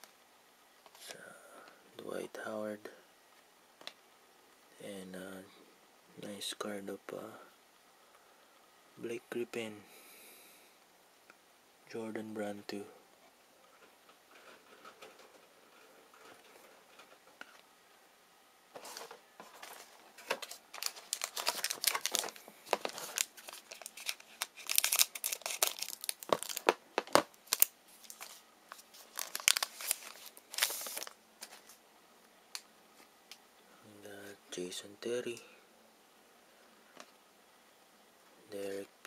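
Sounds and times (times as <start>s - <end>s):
wrapper tearing and crinkling: 19.8s - 31.8s.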